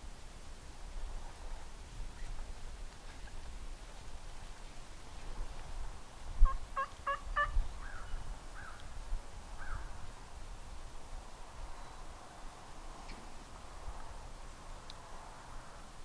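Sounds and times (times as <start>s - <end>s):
turkey yelping: 6.4s - 7.6s.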